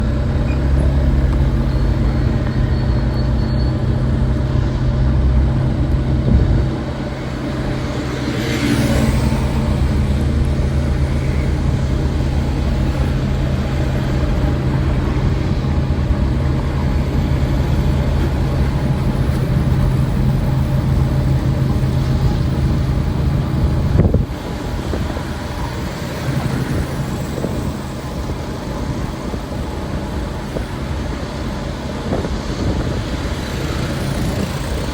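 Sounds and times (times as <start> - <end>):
street traffic: 0.0 - 34.9
vehicle engine running nearby: 0.0 - 34.9.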